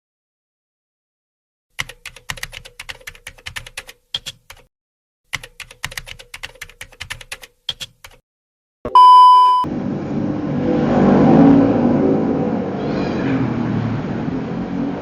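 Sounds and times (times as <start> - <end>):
keyboard typing: 1.8 - 4.7, 5.3 - 8.2.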